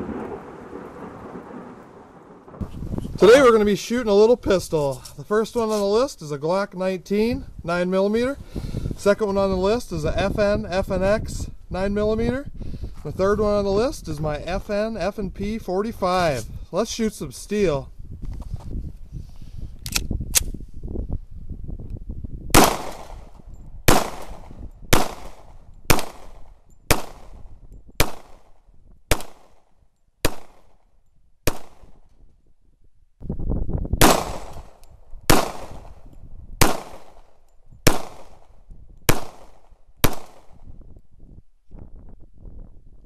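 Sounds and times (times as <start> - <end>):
pistol shots: 22.5 - 23.3, 23.9 - 30.8, 31.4 - 32.0, 34.0 - 40.6.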